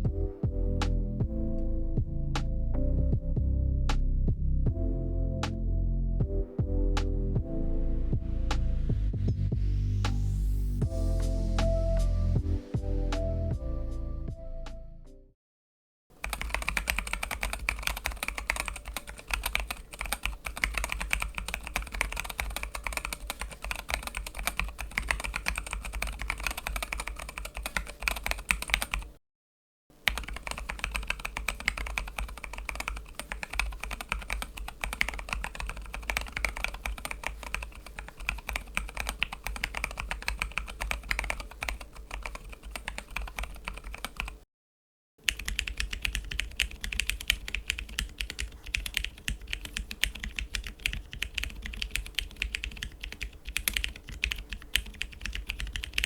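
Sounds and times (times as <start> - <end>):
typing on mechanical keyboard: 16.2 - 29.1, 30.0 - 44.4, 45.2 - 56.0.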